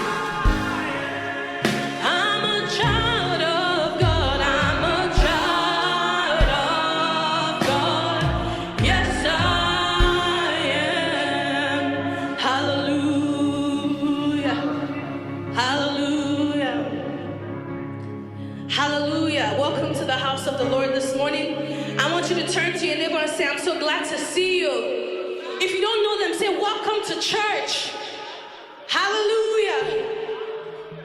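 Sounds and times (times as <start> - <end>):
drum hits: 0.0 - 2.1, 6.4 - 6.8, 7.6 - 10.5
live band playing: 0.0 - 11.7
voices singing gospel: 0.0 - 17.0.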